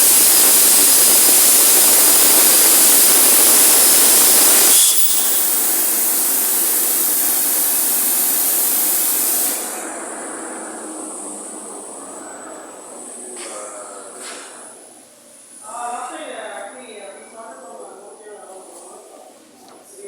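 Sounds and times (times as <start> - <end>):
plasma torch hissing: 0.0 - 14.8
thin high tone: 3.1 - 14.7.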